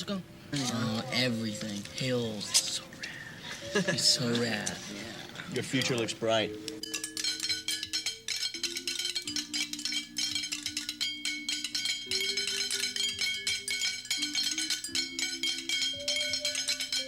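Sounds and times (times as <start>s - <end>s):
bright bell-like notes: 6.7s - 17.0s
clicking percussion: 6.7s - 17.0s.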